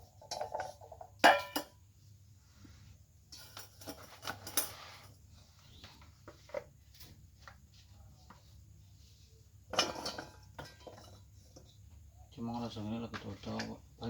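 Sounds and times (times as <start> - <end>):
kitchen items clicking and clinking: 0.0 - 1.8, 3.3 - 5.2, 9.7 - 11.8.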